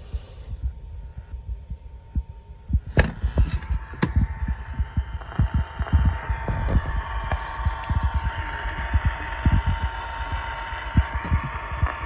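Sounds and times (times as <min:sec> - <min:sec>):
radio static crackle: 0:06.5 - 0:07.2.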